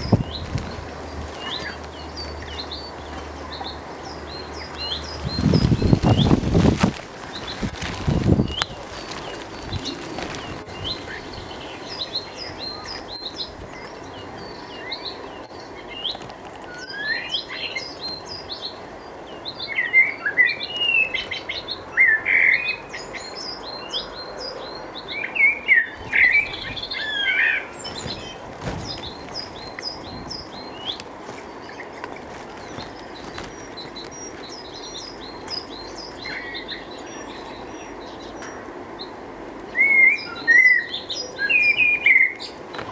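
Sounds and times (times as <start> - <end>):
birds chirping: 0.0 - 42.9.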